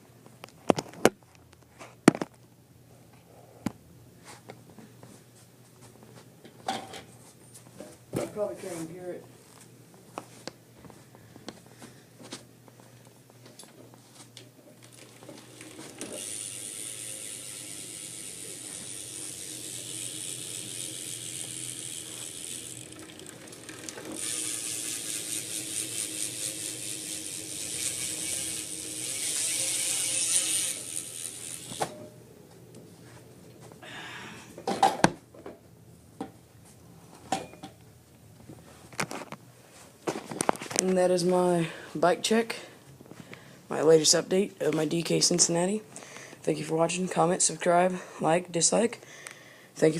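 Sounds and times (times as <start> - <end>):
bicycle hub ratcheting: 14.8 - 31.9.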